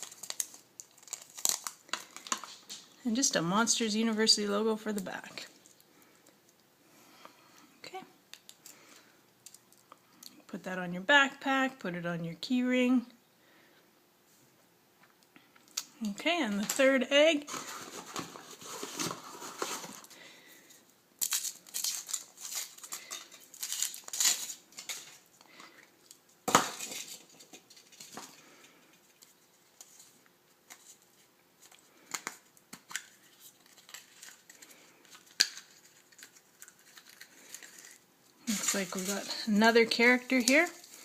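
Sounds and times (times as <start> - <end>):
foil wrapper crinkling and tearing: 0.0 - 2.8, 21.2 - 26.2, 31.6 - 41.0.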